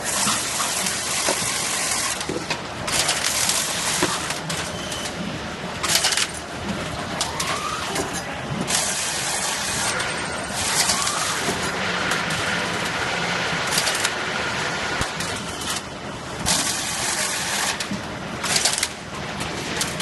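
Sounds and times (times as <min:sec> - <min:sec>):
machine running: 0:00.0 - 0:20.0.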